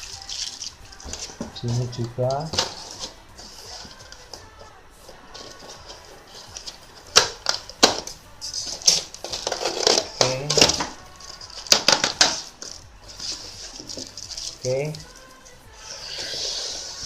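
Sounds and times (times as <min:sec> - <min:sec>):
plastic packaging crinkling: 0:00.0 - 0:01.8, 0:08.6 - 0:14.6.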